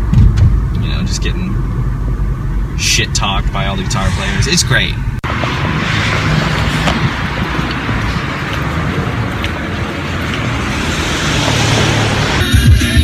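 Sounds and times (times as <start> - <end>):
vehicle road noise: 0.0 - 13.0
music: 12.4 - 13.0.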